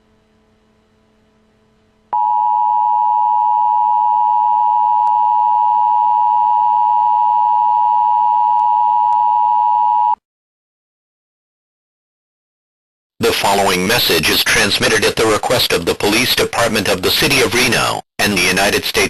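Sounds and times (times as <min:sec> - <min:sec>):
faint hum: 0:00.0 - 0:10.2.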